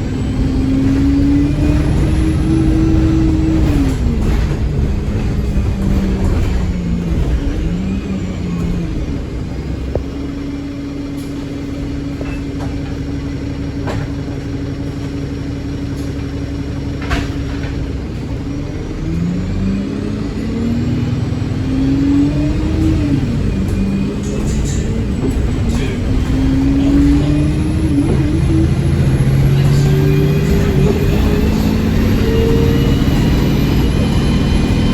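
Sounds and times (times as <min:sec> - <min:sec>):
bus engine under heavy throttle: 0:00.0 - 0:34.9.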